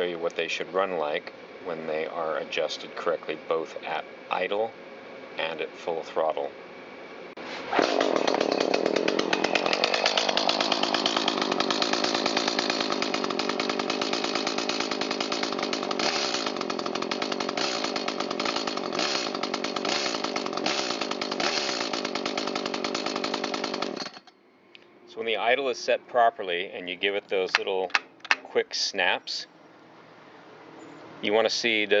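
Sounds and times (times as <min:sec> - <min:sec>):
chainsaw engine revving and idling: 0:07.6 - 0:24.3.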